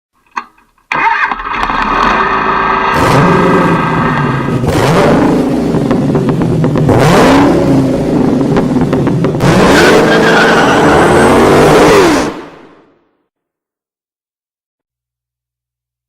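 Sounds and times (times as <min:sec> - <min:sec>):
engine revving: 0:01.0 - 0:12.6.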